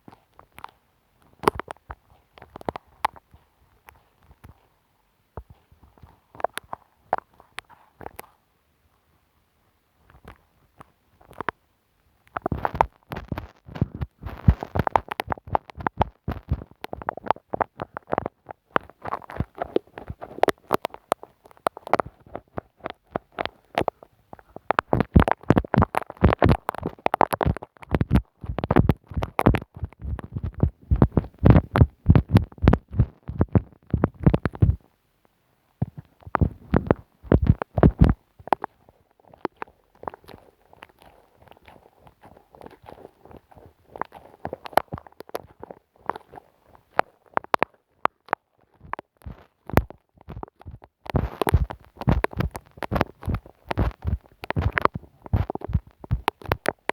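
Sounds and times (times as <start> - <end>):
glue stick rubbed on microphone: 49.7 - 56.7.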